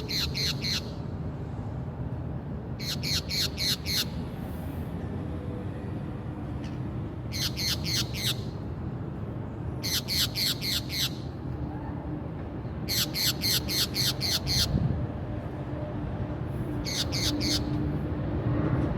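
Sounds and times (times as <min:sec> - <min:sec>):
parakeet squawking: 0:00.0 - 0:01.0, 0:02.8 - 0:04.2, 0:07.3 - 0:08.5, 0:09.8 - 0:11.2, 0:12.9 - 0:14.7, 0:16.8 - 0:17.7.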